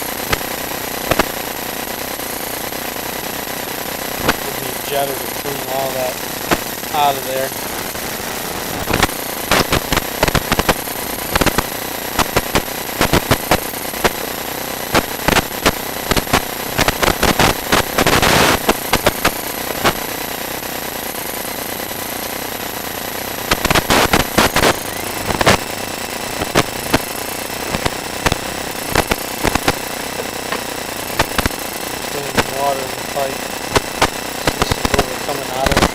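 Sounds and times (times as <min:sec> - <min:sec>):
steady hiss: 0:23.4 - 0:35.9.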